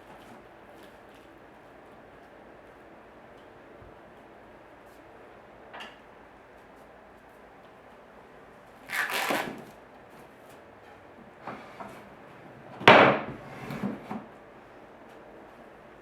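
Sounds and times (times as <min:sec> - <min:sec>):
wood scraping: 0:11.4 - 0:14.3.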